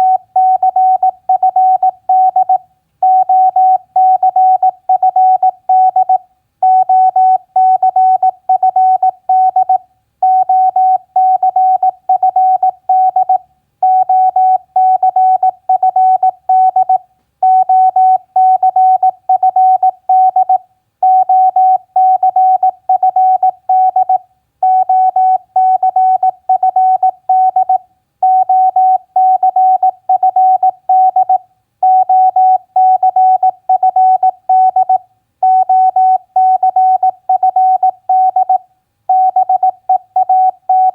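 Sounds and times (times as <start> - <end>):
morse code tone: 0.0 - 40.9.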